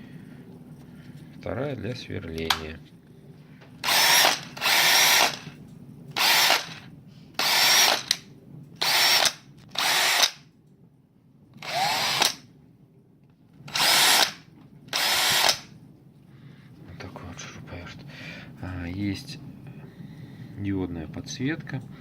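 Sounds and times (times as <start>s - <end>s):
cordless drill whirring: 3.8s - 5.6s, 6.2s - 8.2s, 8.8s - 10.4s, 11.6s - 12.4s, 13.7s - 15.7s.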